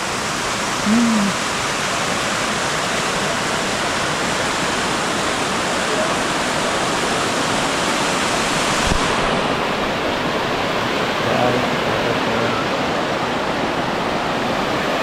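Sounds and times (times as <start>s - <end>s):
waterfall rushing: 0.0s - 15.0s
brief voiced murmur: 0.8s - 1.4s.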